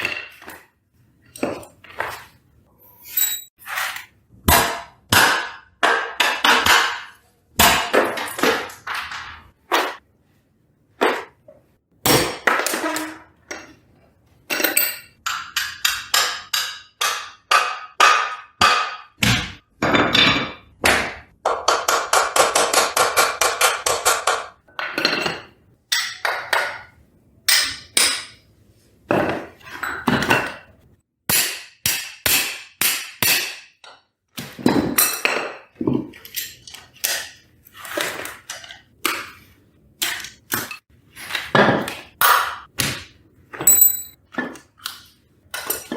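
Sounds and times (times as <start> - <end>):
metal tools clanking: 43.6 - 44.2.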